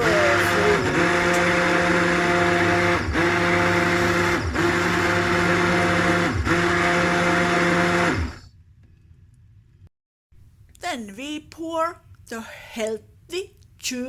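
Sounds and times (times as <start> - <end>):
blender motor running: 0.0 - 8.4.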